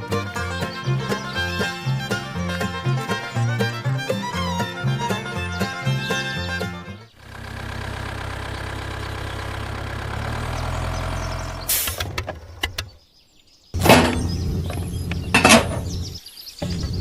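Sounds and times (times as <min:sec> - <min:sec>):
engine running: 0:00.0 - 0:12.9, 0:13.8 - 0:17.0
loud clattering knocks: 0:13.8 - 0:16.0.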